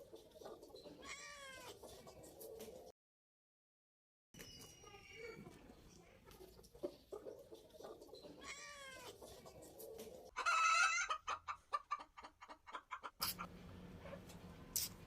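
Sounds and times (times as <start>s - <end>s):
chicken clucking: 0.0s - 2.9s, 4.8s - 14.4s
chicken calling: 10.3s - 13.5s.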